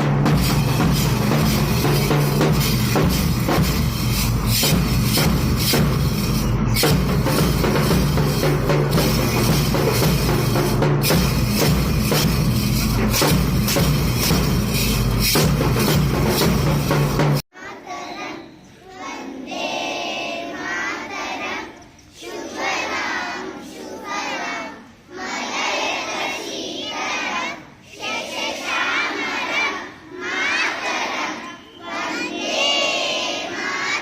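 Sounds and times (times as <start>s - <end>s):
children speaking in unison: 17.6s - 34.0s.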